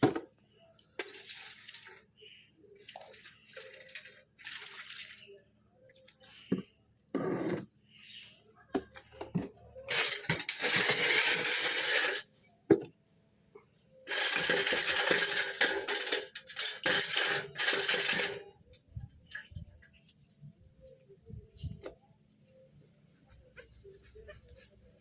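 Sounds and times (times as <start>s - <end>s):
metal parts rattling and scraping: 9.9s - 12.3s, 14.1s - 18.6s.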